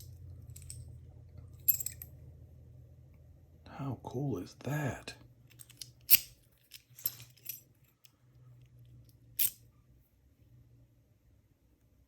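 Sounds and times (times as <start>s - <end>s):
lock and keys clicking: 1.7s - 2.1s, 5.5s - 8.1s.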